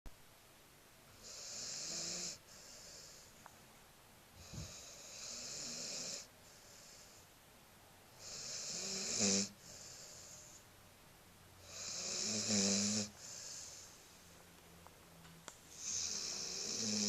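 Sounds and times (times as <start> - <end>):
puppy snoring: 1.1 - 3.4, 4.4 - 7.2, 8.2 - 10.6, 11.6 - 14.0, 15.7 - 17.0.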